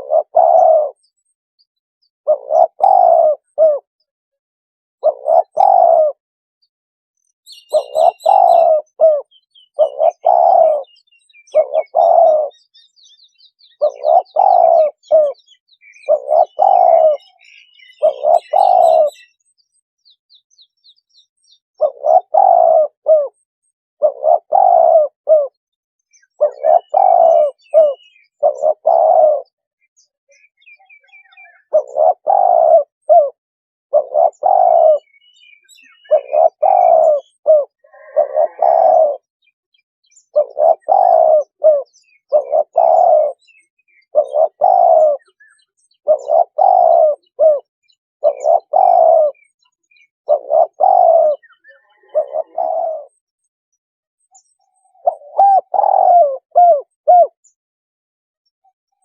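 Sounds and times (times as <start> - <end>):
dove cooing: 0.0 - 1.1, 2.3 - 3.9, 5.0 - 6.2, 7.5 - 12.8, 13.6 - 19.4, 21.8 - 25.6, 26.2 - 29.6, 30.7 - 39.3, 40.2 - 53.2, 54.9 - 57.6
small birds chirping: 0.0 - 4.1, 5.0 - 57.6.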